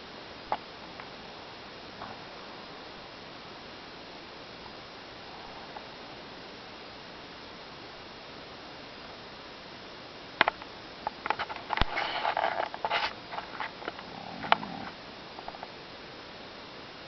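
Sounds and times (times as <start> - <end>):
person snoring and snorting: 14.0 - 15.0.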